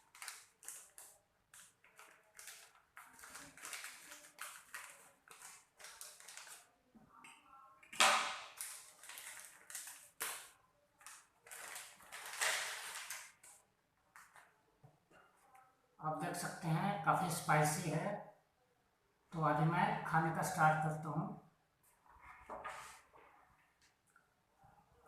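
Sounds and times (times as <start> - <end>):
plastic packet crinkling: 0.0 - 6.8, 8.4 - 14.4.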